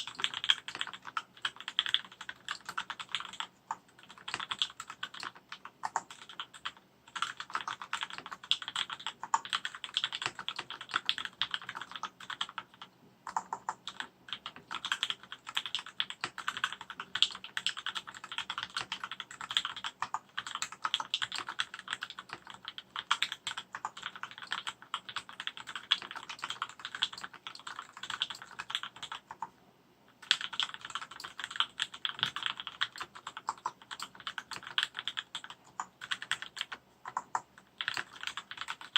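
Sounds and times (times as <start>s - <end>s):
mechanical keyboard typing: 0.0s - 29.5s, 30.2s - 38.9s.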